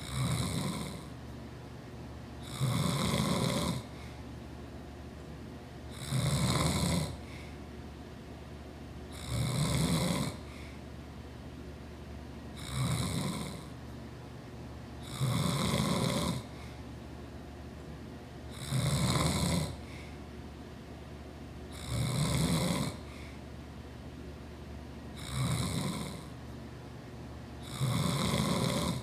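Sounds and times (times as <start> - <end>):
man snoring: 0.0 - 1.1, 2.4 - 4.0, 5.9 - 7.4, 9.1 - 10.6, 12.6 - 13.7, 15.0 - 16.6, 18.5 - 20.0, 21.7 - 23.2, 25.2 - 26.3, 27.6 - 29.0.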